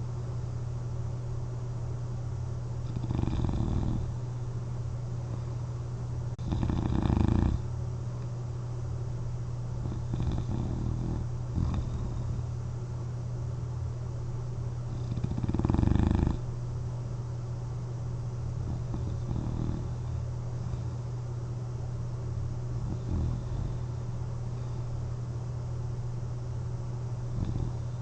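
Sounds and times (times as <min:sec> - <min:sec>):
steady low hum: 0:00.0 - 0:28.0
person snoring: 0:02.9 - 0:04.2, 0:06.4 - 0:07.6, 0:09.8 - 0:12.5, 0:14.9 - 0:16.4, 0:18.6 - 0:21.0, 0:22.8 - 0:24.9, 0:27.3 - 0:28.0.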